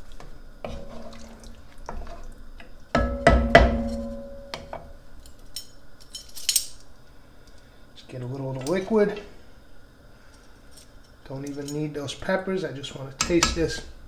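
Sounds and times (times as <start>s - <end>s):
utensil scraping a pot: 0.6s - 2.3s
ringing clanks: 3.0s - 4.9s.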